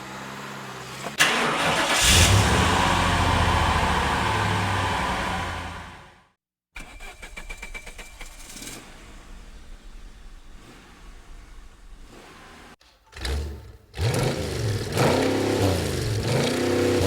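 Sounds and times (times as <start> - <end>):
car engine idling: 6.8 - 17.0
sports car engine running loud: 8.9 - 17.0.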